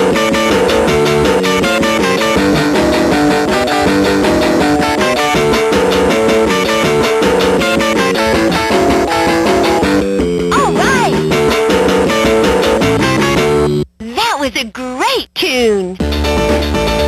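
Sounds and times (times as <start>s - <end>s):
rock song from toy speaker: 10.5s - 11.2s.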